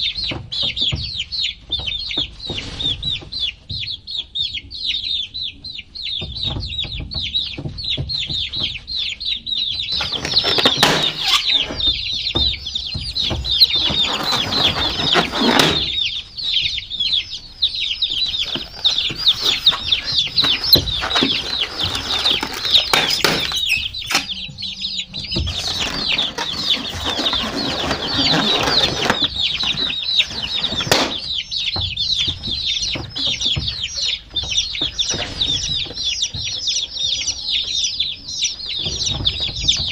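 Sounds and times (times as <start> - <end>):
baby chicks peeping: 0.0 - 39.9
rustling scuffling noise: 9.9 - 37.8.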